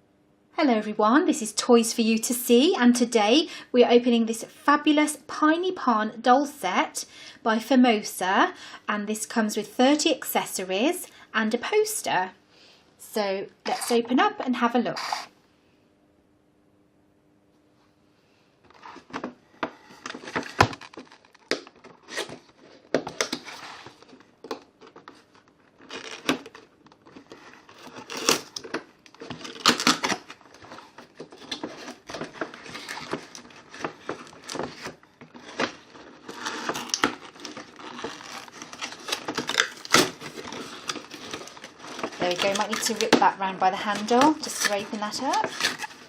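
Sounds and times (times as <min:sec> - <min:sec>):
packaging tearing and crinkling: 0:20.0 - 0:46.0.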